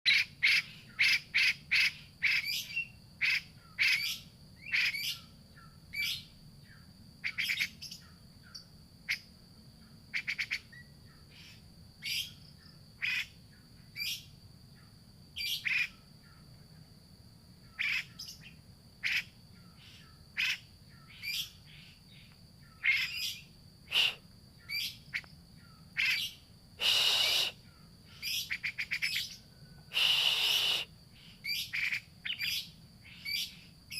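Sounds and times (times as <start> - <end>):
harsh rasping bird call: 22.8 - 24.8, 26.0 - 29.3, 29.9 - 30.9
bird calling sharp notes: 22.8 - 24.9, 26.0 - 27.6, 29.9 - 30.9.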